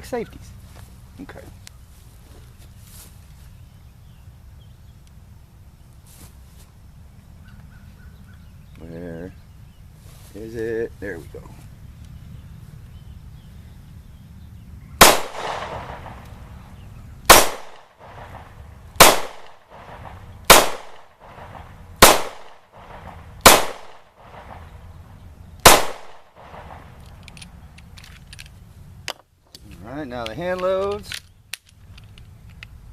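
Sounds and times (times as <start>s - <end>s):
pistol shots with echo: 15.0s - 16.3s, 17.3s - 24.7s, 25.6s - 26.9s.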